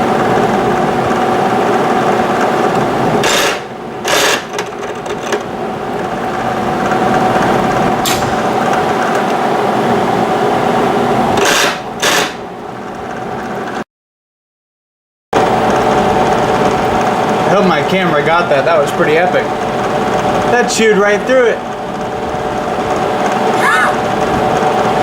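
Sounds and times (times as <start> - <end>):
electric drill boring steel: 1.3 - 4.9, 11.4 - 12.4
drill bit breaking through metal: 3.2 - 5.3, 11.4 - 12.4.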